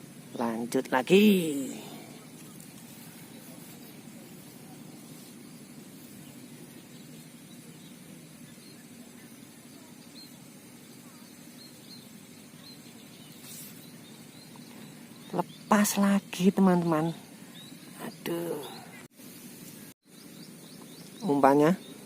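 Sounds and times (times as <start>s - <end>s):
steady low hiss: 0.0s - 22.0s
faint high chirps: 1.3s - 15.7s.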